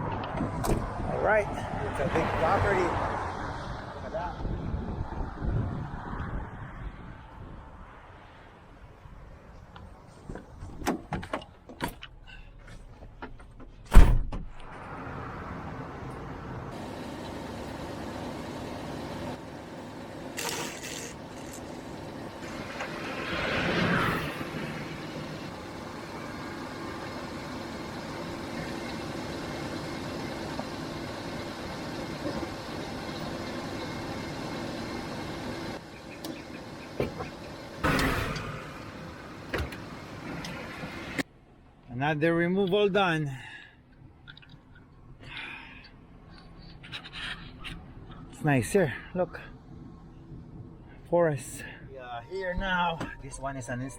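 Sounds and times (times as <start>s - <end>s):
vehicle engine humming: 0.0s - 6.9s, 14.6s - 41.9s
vehicle door slamming: 13.8s - 14.6s, 37.0s - 39.8s.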